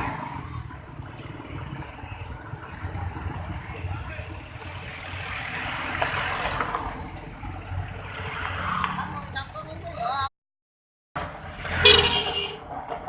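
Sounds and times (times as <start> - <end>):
vehicle passing: 0.0 - 10.0
traffic engine rumble: 0.0 - 10.3, 11.2 - 13.0.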